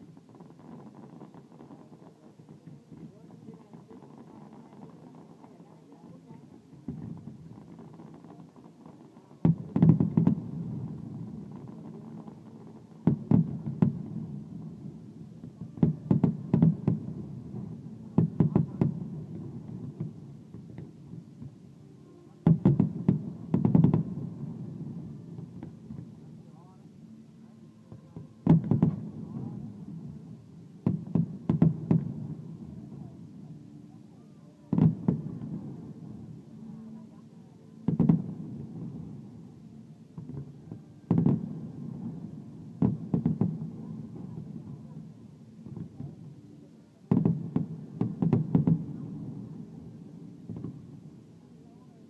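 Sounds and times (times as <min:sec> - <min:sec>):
fireworks rumble: 0:00.0 - 0:52.0
fireworks bangs: 0:06.9 - 0:21.5, 0:22.4 - 0:26.2, 0:28.0 - 0:33.2, 0:34.7 - 0:36.3, 0:37.8 - 0:39.3, 0:40.2 - 0:45.0, 0:47.1 - 0:51.1.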